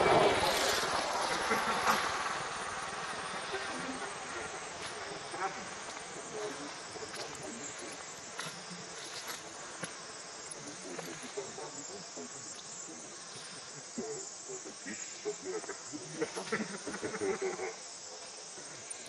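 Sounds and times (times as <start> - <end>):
insects buzzing in trees: 0.0 - 19.0.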